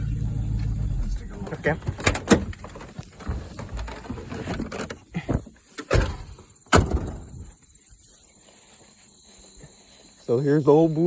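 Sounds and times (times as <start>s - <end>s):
vehicle door clunks: 1.5s - 7.3s.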